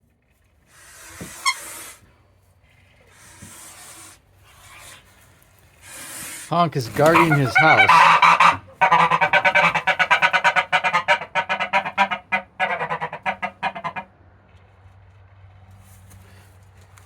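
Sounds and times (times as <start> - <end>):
gander honking: 6.6 - 14.1.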